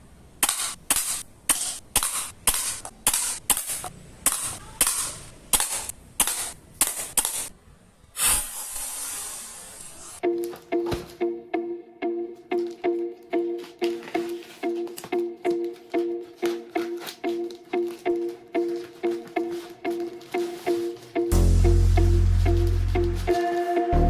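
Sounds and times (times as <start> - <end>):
burst of hiss: 8.2 - 10.2
plucked-string music: 10.2 - 24.0.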